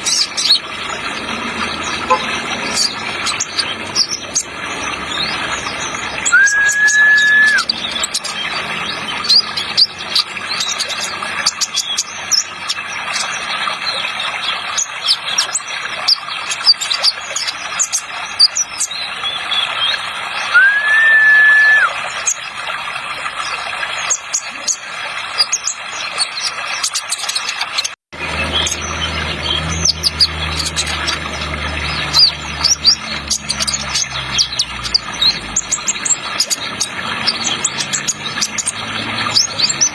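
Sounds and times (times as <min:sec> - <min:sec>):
bird long whistle: 0:06.2 - 0:07.7, 0:20.5 - 0:22.0.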